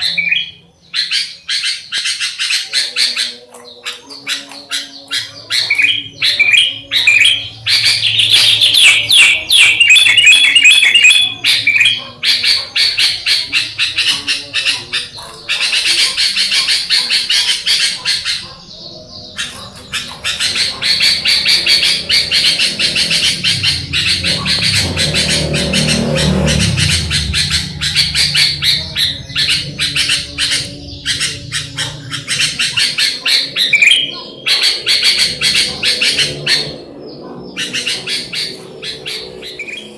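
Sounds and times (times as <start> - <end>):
bulbuls chirping and singing: 0.0 - 39.9.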